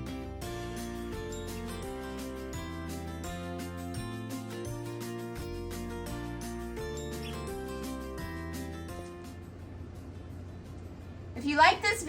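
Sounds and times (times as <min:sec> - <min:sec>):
strummed instrumental music: 0:00.0 - 0:09.6.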